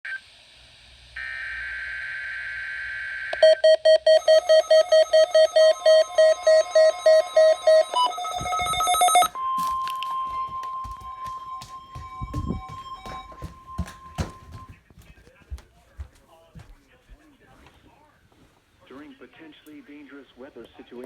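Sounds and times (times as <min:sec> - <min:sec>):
electronic alert beeps: 0:03.4 - 0:14.6
steady warning alarm tone: 0:03.4 - 0:14.8.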